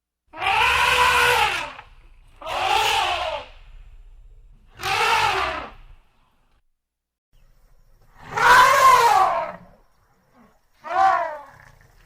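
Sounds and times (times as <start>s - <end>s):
elephant trumpeting: 0.3s - 6.0s, 8.2s - 9.7s
low rumble: 1.7s - 6.6s.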